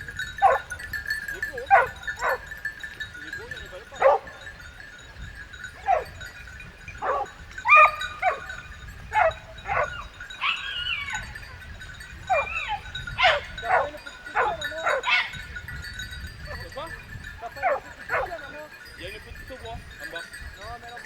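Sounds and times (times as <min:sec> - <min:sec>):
dogs baying and yelping: 0:00.0 - 0:02.7, 0:04.0 - 0:04.6, 0:05.7 - 0:16.8, 0:17.4 - 0:18.7
tinkling dog bells: 0:00.0 - 0:21.0.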